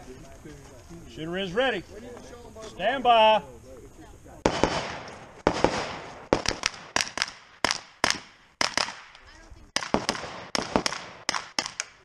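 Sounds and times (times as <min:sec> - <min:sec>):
rifle gunshots with echo: 0:04.4 - 0:09.2, 0:09.8 - 0:12.0.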